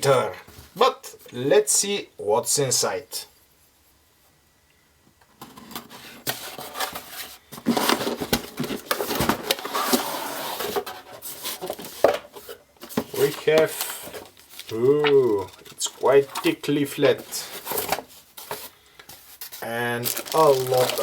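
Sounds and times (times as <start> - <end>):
packaging rustling and scraping: 5.4 - 21.0.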